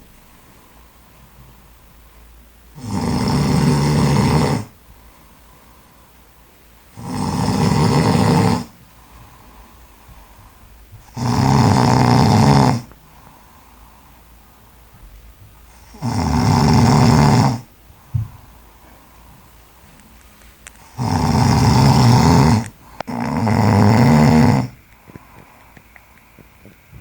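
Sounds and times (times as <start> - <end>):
man snoring loudly: 2.8 - 4.7, 6.9 - 8.7, 11.0 - 12.9, 15.8 - 17.7, 20.9 - 24.8.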